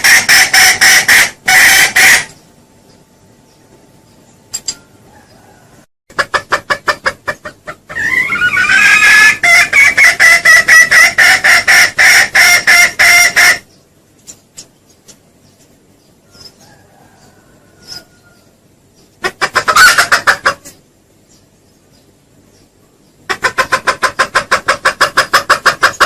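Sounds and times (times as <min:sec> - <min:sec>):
junglefowl clucking: 0:00.0 - 0:02.4, 0:04.6 - 0:14.7, 0:16.2 - 0:20.8, 0:23.2 - 0:26.0
junglefowl long rising call: 0:07.9 - 0:13.6.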